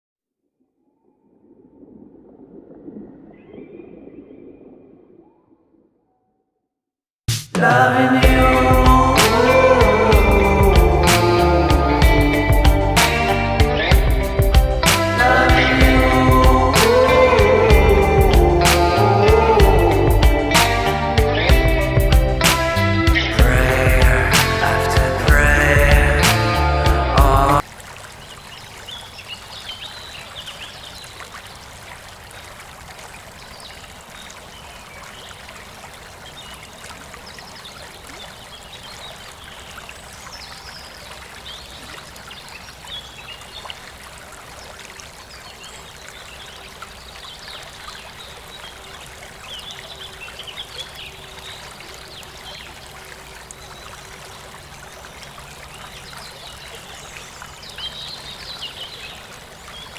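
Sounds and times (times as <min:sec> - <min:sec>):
stream running: 0:00.6 - 0:06.0, 0:07.8 - 0:59.9
birds chirping: 0:33.1 - 0:44.0, 0:44.6 - 0:59.9.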